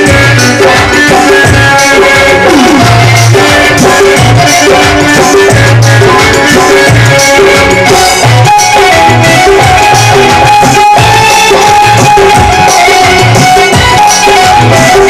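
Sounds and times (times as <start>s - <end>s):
keyboard melody: 0.0s - 15.0s
tabla drums beat: 0.0s - 15.0s.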